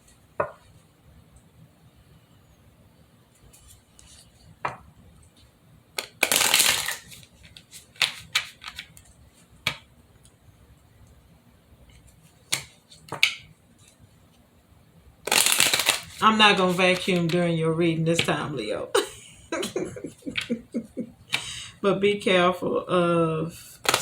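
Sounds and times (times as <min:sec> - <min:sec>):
cards snapping and tapping: 0:06.0 - 0:09.0, 0:09.6 - 0:09.9, 0:12.5 - 0:13.5, 0:15.3 - 0:17.4
cards shuffling: 0:06.0 - 0:09.8, 0:15.3 - 0:17.5.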